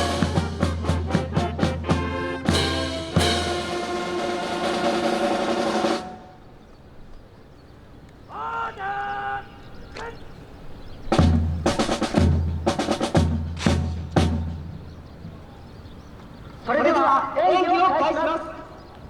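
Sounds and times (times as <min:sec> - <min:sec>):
band music: 0:00.0 - 0:06.4
snare drum roll: 0:00.0 - 0:06.4, 0:11.2 - 0:14.6.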